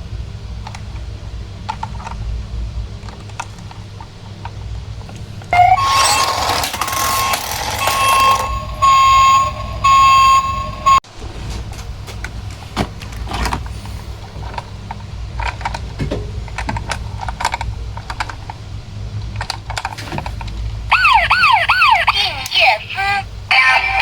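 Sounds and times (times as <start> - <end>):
plastic toy vehicles rattling: 0.5 - 8.8, 11.2 - 22.7
toy electronic siren wailing: 5.6 - 11.0, 20.9 - 24.0.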